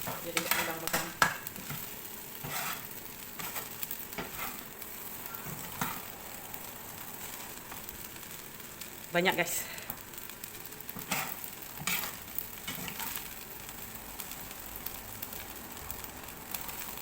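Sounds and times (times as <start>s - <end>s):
spatula scraping pan: 0.0s - 6.1s, 10.9s - 13.2s
rice sizzling in a frying pan: 0.0s - 17.0s.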